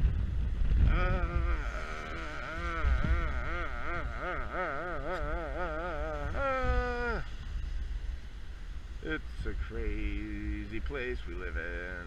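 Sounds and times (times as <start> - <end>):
wind rumble on microphone: 0.0 - 12.0
man warbling with vibrato: 0.9 - 7.3.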